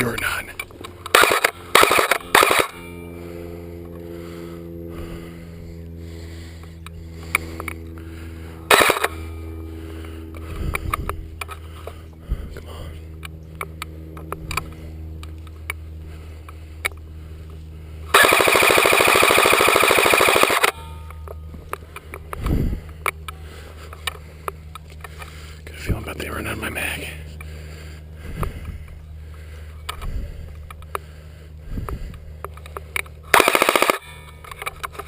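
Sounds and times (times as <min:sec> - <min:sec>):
steady low hum: 0:00.0 - 0:35.0
airsoft rifle full-auto burst: 0:01.1 - 0:02.8, 0:08.7 - 0:09.2, 0:18.1 - 0:20.8, 0:33.3 - 0:34.3.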